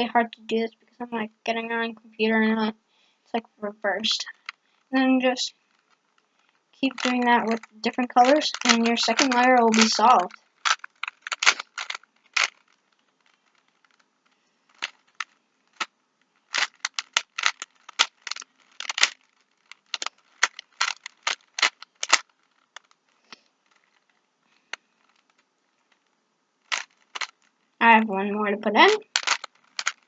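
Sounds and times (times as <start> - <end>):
puzzle cube clicking: 6.8 - 12.7, 14.7 - 15.9, 16.5 - 24.0, 26.7 - 27.5, 28.9 - 30.0.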